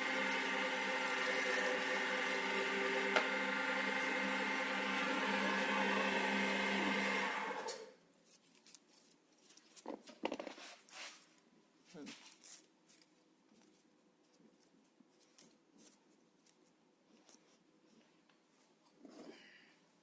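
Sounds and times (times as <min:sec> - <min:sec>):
wood lathe motor humming: 0:00.0 - 0:07.9.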